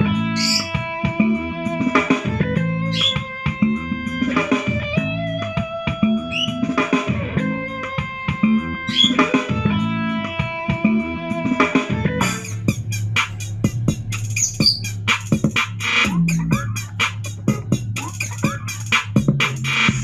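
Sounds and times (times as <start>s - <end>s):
guitar music through small speaker: 0.0s - 12.7s, 16.0s - 18.9s.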